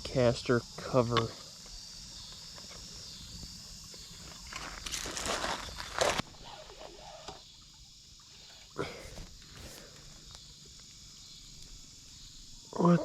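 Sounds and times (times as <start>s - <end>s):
insects chirring: 0.0s - 13.0s
rustling handling noises: 4.5s - 6.2s.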